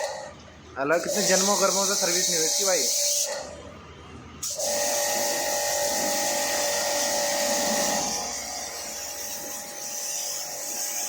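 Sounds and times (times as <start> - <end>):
machine motor whining: 4.6 - 10.6.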